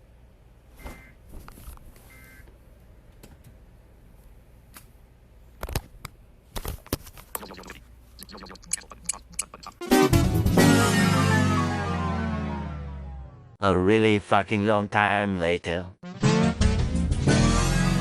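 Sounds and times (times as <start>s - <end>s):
buzzy two-tone warble: 9.6s - 13.6s.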